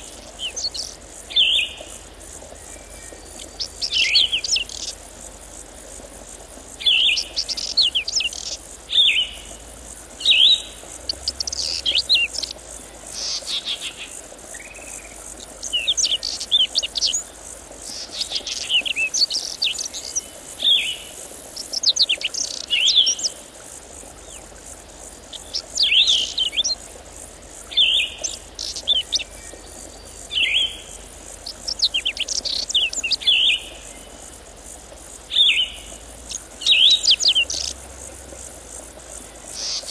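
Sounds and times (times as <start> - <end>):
songbird chirping: 0.0 - 5.1, 6.7 - 23.4, 24.0 - 38.3.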